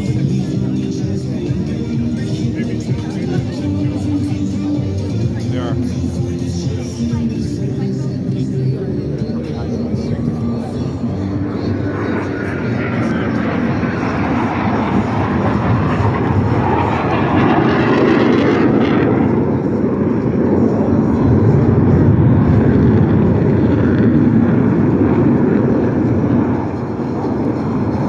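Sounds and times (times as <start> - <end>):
jet engines roaring: 0.0 - 28.0.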